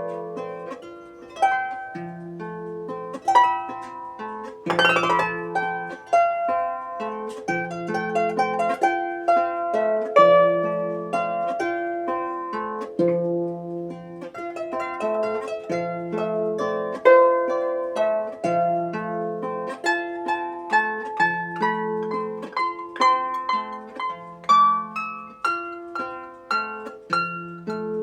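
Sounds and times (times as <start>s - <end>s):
solo harp playing slowly: 4.7s - 7.0s.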